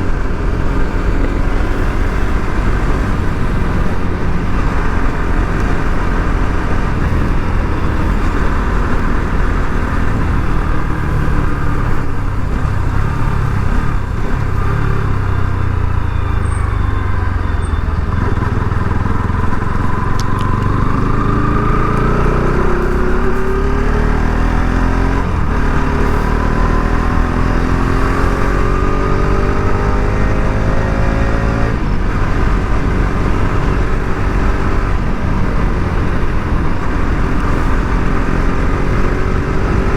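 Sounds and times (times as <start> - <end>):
motorcycle engine accelerating: 0.0 - 39.9.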